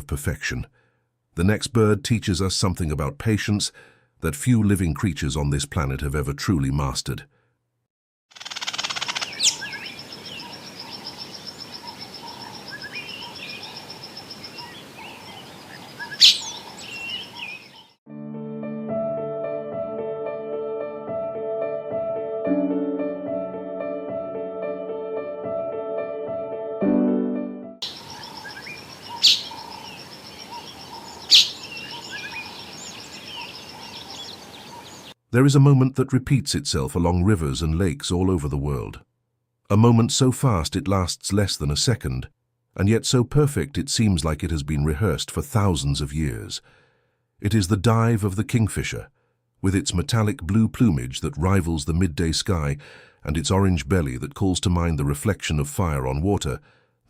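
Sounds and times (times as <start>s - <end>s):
bird chirps: 8.4s - 18.0s, 27.8s - 35.2s
soft music: 18.1s - 27.8s.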